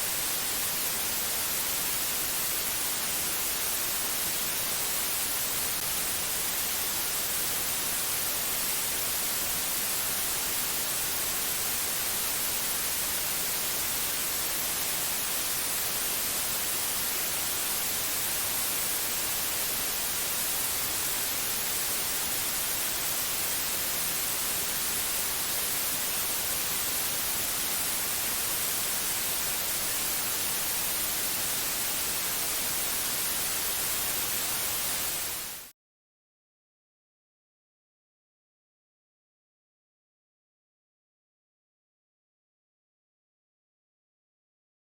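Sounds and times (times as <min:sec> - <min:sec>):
white noise hiss: 0:00.0 - 0:35.7.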